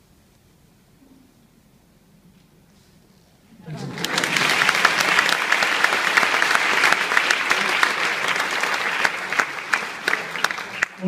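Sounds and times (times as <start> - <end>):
large audience clapping: 3.6 - 11.0.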